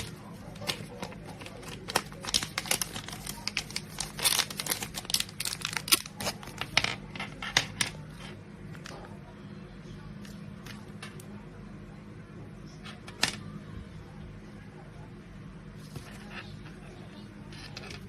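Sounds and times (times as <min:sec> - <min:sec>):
plastic packaging crinkling: 0:00.0 - 0:06.9.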